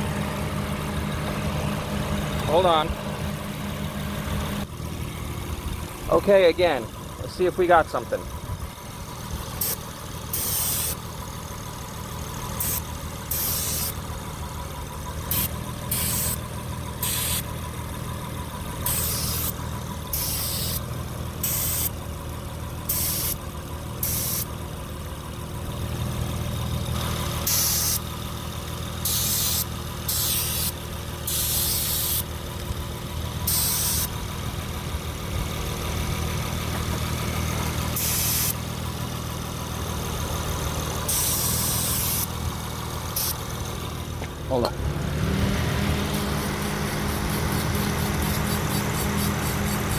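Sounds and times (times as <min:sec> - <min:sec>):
engine idling: 0:00.0 - 0:49.9
aerosol spray hissing bursts: 0:09.6 - 0:11.0, 0:12.6 - 0:13.9, 0:15.3 - 0:16.4, 0:17.0 - 0:17.4, 0:18.8 - 0:19.5, 0:20.2 - 0:20.8, 0:21.4 - 0:21.9, 0:22.9 - 0:23.4, 0:24.0 - 0:24.4, 0:27.5 - 0:28.0, 0:29.1 - 0:32.2, 0:33.5 - 0:34.1, 0:38.0 - 0:38.6, 0:41.1 - 0:42.3, 0:43.2 - 0:43.4, 0:46.0 - 0:49.9.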